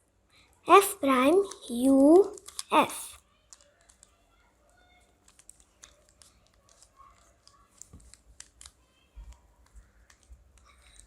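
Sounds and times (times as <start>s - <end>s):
plastic cube clicking: 2.2s - 2.7s, 3.5s - 4.1s, 5.2s - 8.8s.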